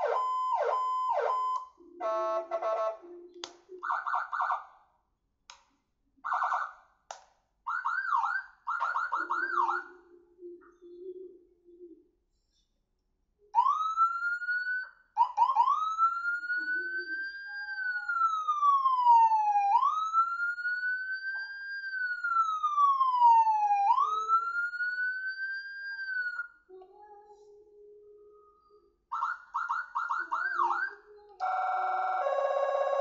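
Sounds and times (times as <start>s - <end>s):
electronic siren wailing: 0.0s - 3.0s, 3.8s - 4.7s, 7.8s - 9.9s, 13.6s - 26.5s, 29.1s - 33.0s.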